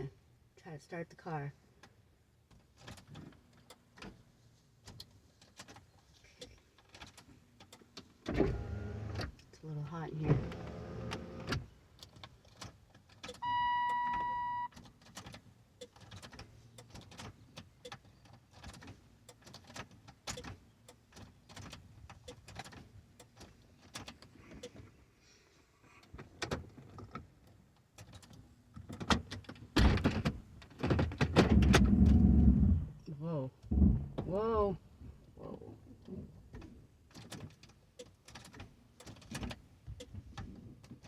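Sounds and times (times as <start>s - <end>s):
car warning chime beep: 13.4s - 14.8s.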